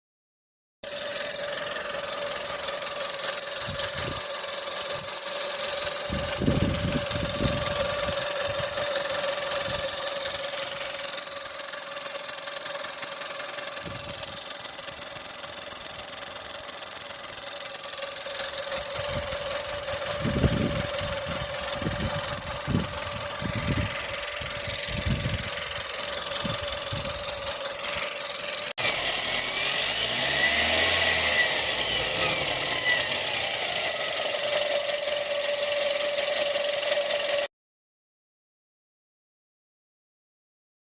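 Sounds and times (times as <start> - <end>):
car engine running: 0.8 - 37.5.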